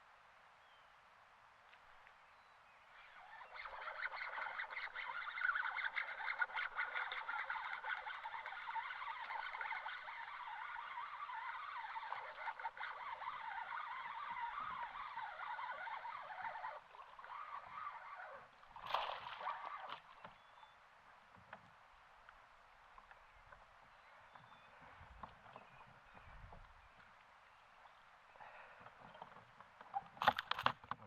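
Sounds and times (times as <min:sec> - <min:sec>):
birds singing in chorus: 0:19.6 - 0:20.8, 0:23.1 - 0:28.7.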